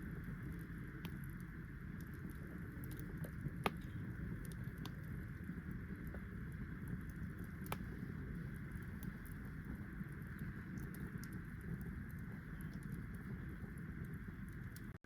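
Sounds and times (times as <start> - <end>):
steady low rumble: 0.0 - 14.9
wood fire crackling: 0.0 - 15.0
sharp pops of fire: 2.8 - 5.2, 6.9 - 9.4.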